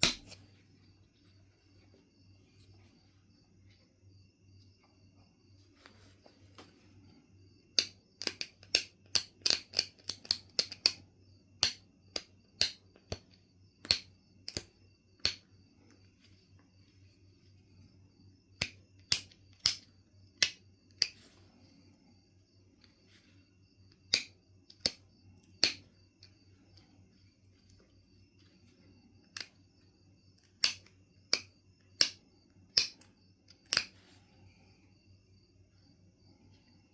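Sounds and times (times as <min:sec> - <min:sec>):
flint knapping clicks: 0:07.8 - 0:11.0, 0:11.6 - 0:15.4, 0:18.6 - 0:21.2, 0:24.0 - 0:25.8, 0:29.3 - 0:29.6, 0:30.6 - 0:34.0.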